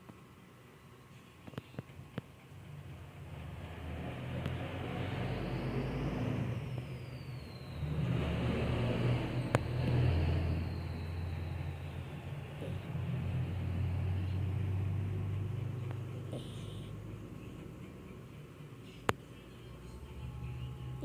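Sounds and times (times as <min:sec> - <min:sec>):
puppy snoring: 0:12.4 - 0:17.8.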